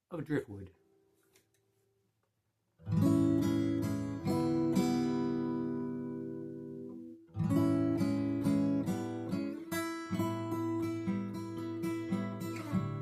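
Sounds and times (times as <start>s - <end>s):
fingerpicked acoustic guitar: 2.8s - 13.0s.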